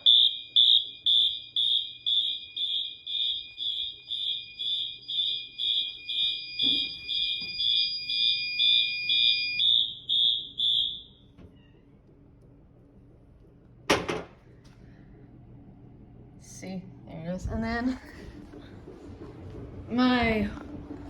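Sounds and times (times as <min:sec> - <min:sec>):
steady high alarm tone: 0:00.0 - 0:11.2
pulsing fire alarm horn: 0:00.0 - 0:11.3.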